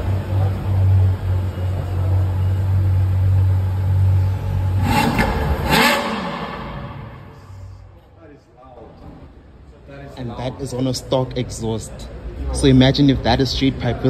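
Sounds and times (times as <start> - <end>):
car engine idling: 0.0 - 8.2.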